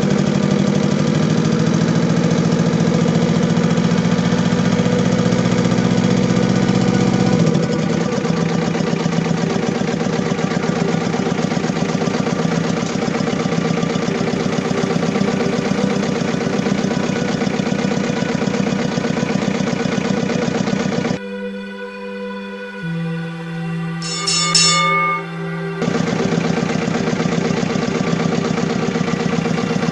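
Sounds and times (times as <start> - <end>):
diesel engine idling rough: 0.0 - 21.2, 24.8 - 29.9.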